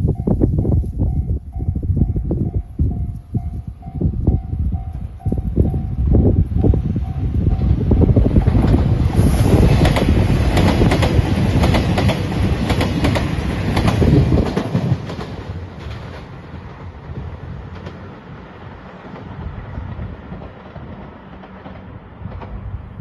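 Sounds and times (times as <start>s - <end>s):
train rumble: 0.0s - 23.0s
train wheels clacking over rail joints: 7.5s - 17.0s, 18.8s - 22.8s.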